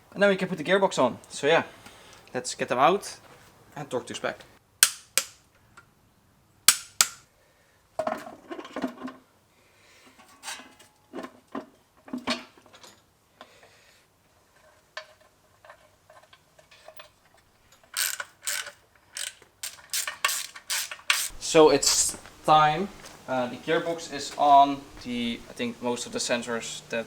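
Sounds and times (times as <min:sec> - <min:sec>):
loose steel bolts clinking: 0:16.1 - 0:22.4
wrench and ratchet clicking: 0:17.7 - 0:22.0.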